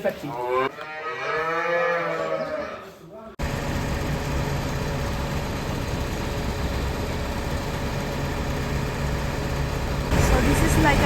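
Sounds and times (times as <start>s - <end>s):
feed mixer grinding: 3.4s - 11.0s.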